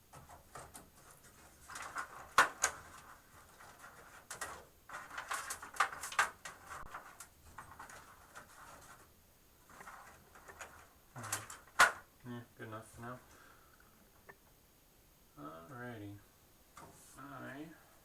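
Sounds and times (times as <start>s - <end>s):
cables rustling and scraping: 0.0s - 12.1s.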